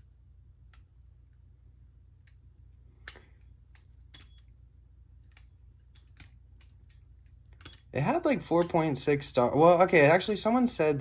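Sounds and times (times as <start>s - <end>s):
metal clicks of knife handles: 3.0s - 4.5s.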